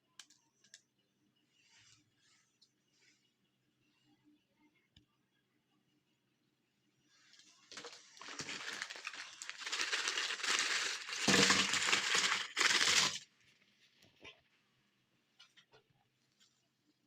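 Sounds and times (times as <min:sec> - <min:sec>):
cookies crushed in meat grinder: 0:07.7 - 0:13.2.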